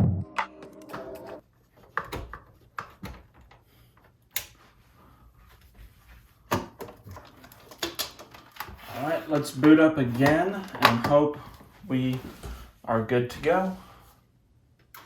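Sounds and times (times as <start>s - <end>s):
background music: 0.0s - 1.4s.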